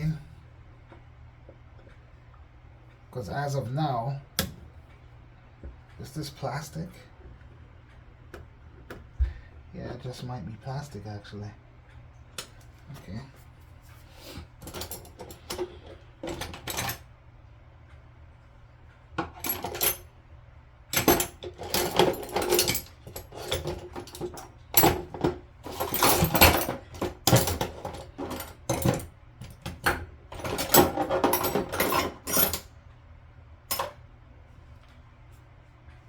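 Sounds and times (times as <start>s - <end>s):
tools scraping and clicking on fittings: 14.2s - 17.0s, 20.9s - 32.7s.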